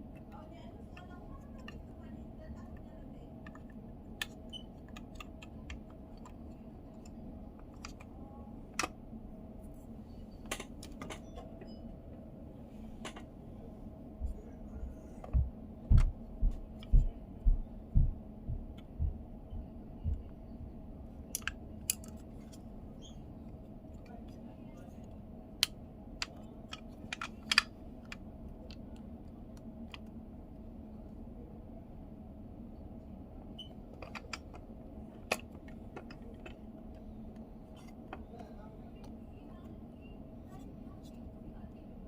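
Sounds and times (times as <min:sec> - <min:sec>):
faint steady hum: 0:00.0 - 0:42.0
small plastic parts clicking: 0:02.8 - 0:08.1, 0:21.3 - 0:22.6, 0:25.6 - 0:30.2, 0:33.6 - 0:38.2.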